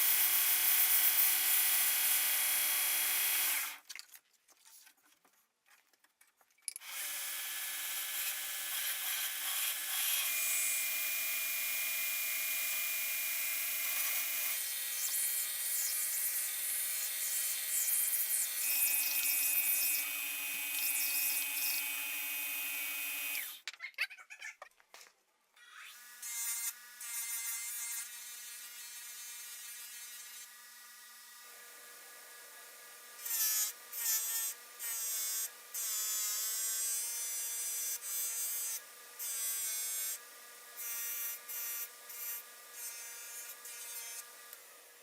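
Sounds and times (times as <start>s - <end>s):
power tool motor whining: 18.4s - 23.6s.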